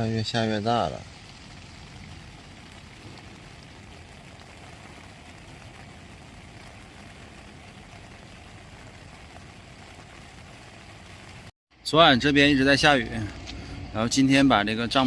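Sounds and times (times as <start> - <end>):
steady rain falling: 0.0 - 11.5.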